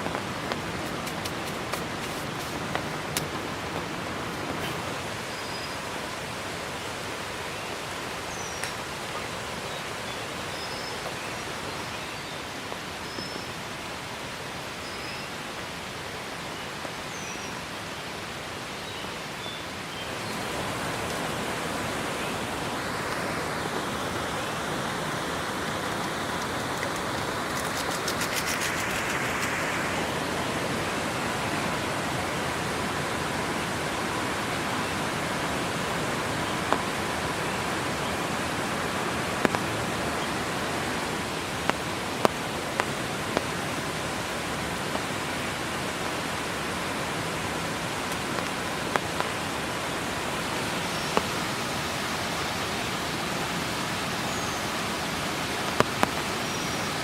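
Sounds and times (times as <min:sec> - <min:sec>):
sharp taps: 0:00.0 - 0:03.9
steady rain hiss: 0:00.0 - 0:57.0.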